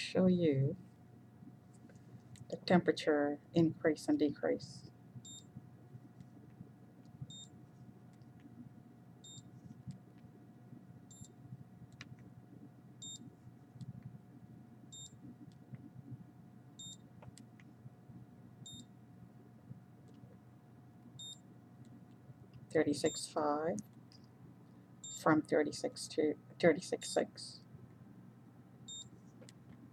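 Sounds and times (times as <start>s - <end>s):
low steady hum: 0.0s - 29.9s
meter beeping: 7.3s - 7.6s, 9.2s - 9.5s, 11.1s - 11.3s, 13.0s - 13.3s, 14.9s - 15.2s, 16.8s - 17.0s, 18.6s - 18.9s, 21.2s - 21.4s, 25.0s - 25.3s, 28.9s - 29.1s.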